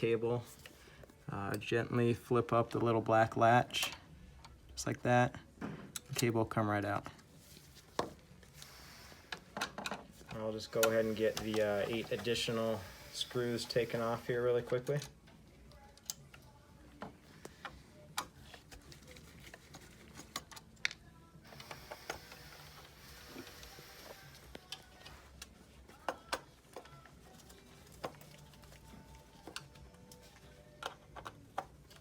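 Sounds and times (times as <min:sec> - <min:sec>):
soft hiss: 0:10.3 - 0:15.1.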